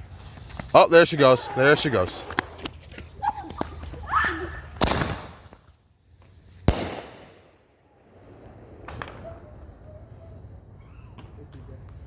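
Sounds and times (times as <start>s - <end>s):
fireworks bangs and cracks: 4.6s - 5.7s, 6.6s - 12.0s.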